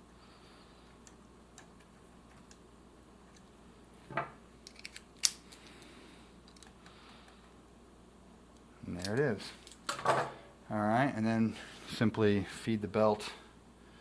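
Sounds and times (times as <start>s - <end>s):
mechanism parts clicking: 4.6s - 5.8s, 6.5s - 6.8s.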